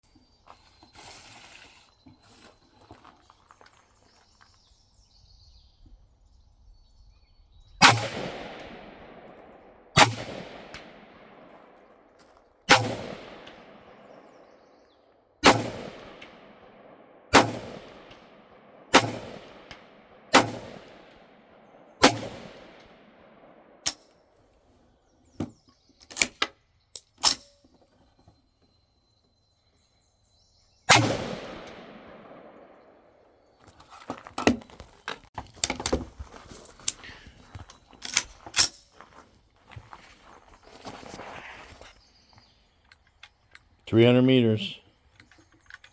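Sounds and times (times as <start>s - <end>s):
gunshots with echo: 7.8s - 11.8s, 12.7s - 14.5s, 15.4s - 24.0s, 30.9s - 33.1s
sharp cracks: 7.8s - 14.3s, 15.4s - 24.2s, 30.9s - 33.1s.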